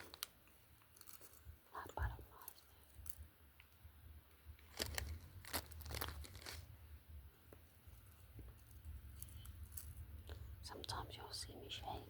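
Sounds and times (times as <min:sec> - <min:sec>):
packaging crinkling and tearing: 0:00.0 - 0:01.5, 0:04.6 - 0:06.8.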